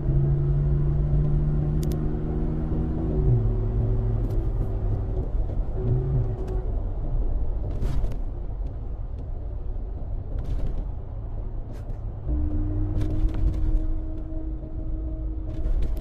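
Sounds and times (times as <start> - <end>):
car cabin engine rumble: 0.0 - 16.0
tyres on road: 0.0 - 16.0
hum: 12.2 - 16.0.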